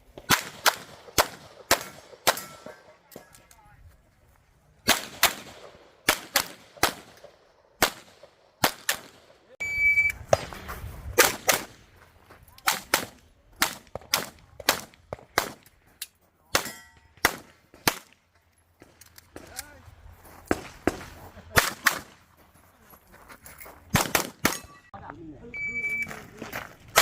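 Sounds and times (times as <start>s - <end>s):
pistol shots: 0.2s - 3.3s, 4.8s - 9.4s, 11.2s - 11.8s, 12.7s - 15.7s, 16.5s - 18.1s, 20.5s - 22.2s, 23.9s - 24.8s
steel targets ringing: 2.3s - 2.9s, 16.6s - 17.2s.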